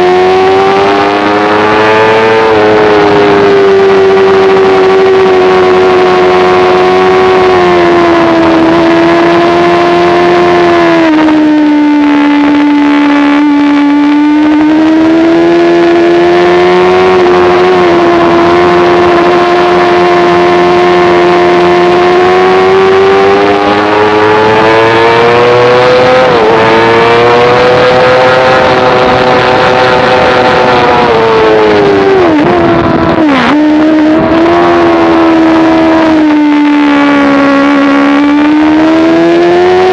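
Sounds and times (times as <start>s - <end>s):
motorcycle engine at high revs: 0.0s - 39.9s
wind rush: 22.6s - 38.3s.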